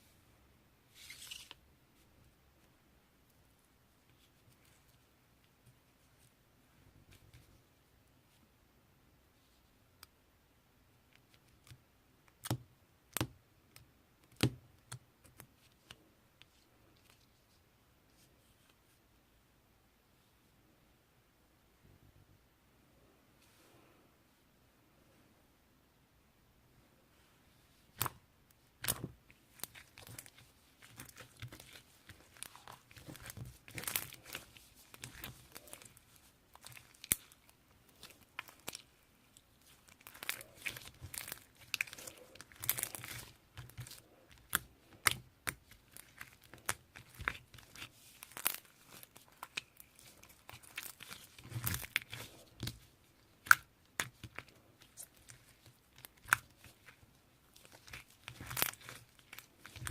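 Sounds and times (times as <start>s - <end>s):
slime crackling and popping: 28.8s - 59.9s.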